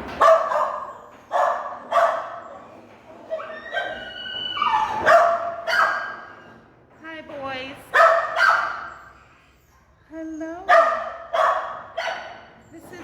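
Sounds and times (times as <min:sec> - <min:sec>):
dogs barking: 0:00.1 - 0:02.7, 0:03.4 - 0:06.3, 0:07.9 - 0:09.2, 0:10.7 - 0:12.6
dog whining: 0:02.4 - 0:06.5, 0:08.6 - 0:10.8.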